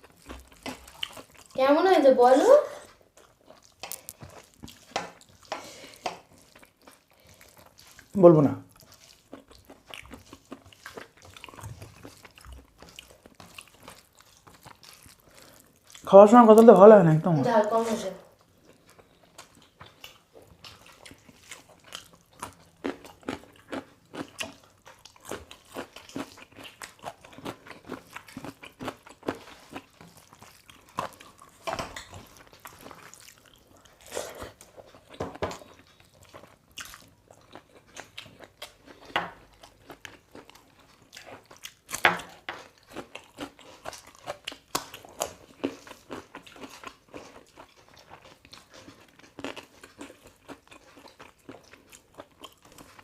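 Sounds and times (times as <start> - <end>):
people chewing food: 0.0 - 53.0
wet mouth clicks and crunches: 3.6 - 4.8.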